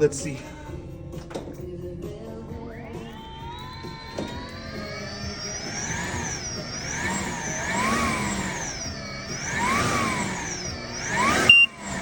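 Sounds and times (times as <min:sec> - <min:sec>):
electric motor whining: 0:03.2 - 0:12.0.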